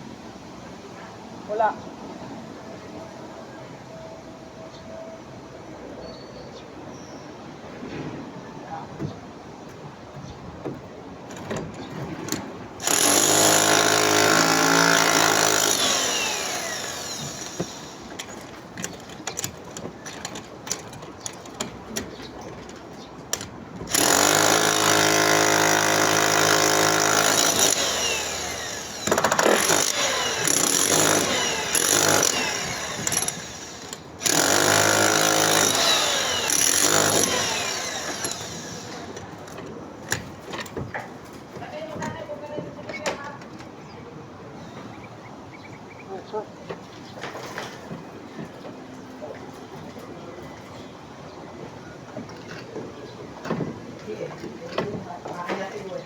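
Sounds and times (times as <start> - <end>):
electric demolition hammer: 12.8 - 18.3, 23.4 - 39.2.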